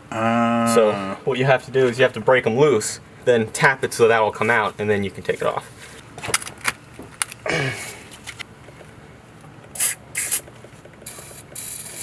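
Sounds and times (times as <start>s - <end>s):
aerosol spray can hissing: 9.8s - 10.5s, 11.1s - 12.0s.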